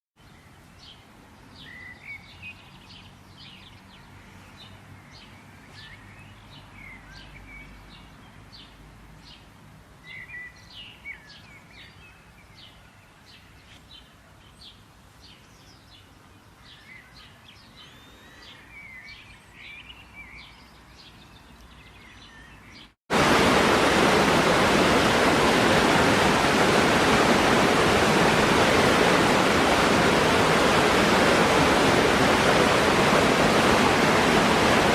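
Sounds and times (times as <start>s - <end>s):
birds chirping: 16.7s - 34.9s
rushing water: 23.1s - 34.9s.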